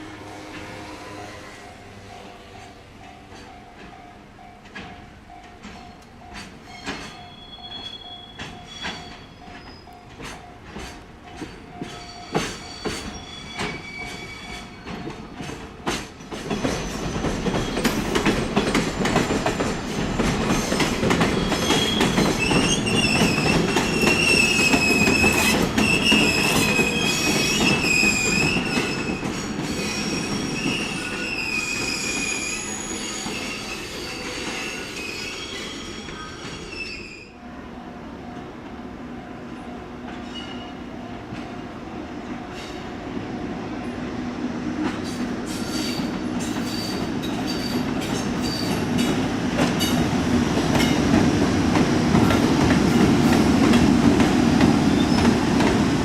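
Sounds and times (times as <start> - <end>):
train rumbling: 0.0 - 56.0
wheels squealing: 6.6 - 10.0, 11.9 - 15.0, 16.5 - 37.4.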